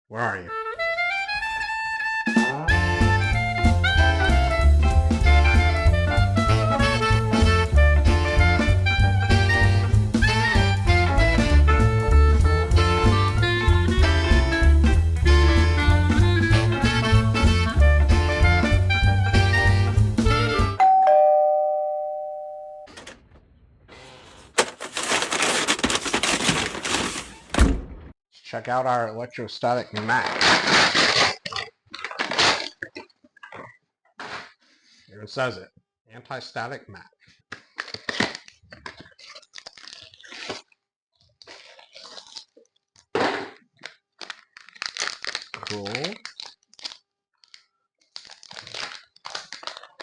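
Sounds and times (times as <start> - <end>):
two-note doorbell chime: 20.8 - 22.9
packaging crinkling and tearing: 24.4 - 27.5, 30.0 - 32.9, 37.5 - 50.0
loud rustling and knocking: 24.5 - 27.6.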